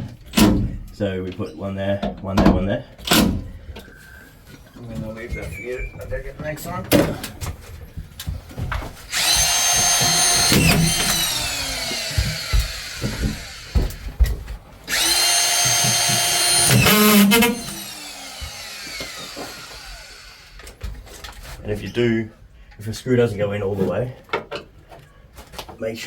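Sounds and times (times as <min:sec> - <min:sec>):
screw gun motor whining: 0:09.1 - 0:14.0, 0:14.9 - 0:20.7
knocks: 0:09.4 - 0:14.5.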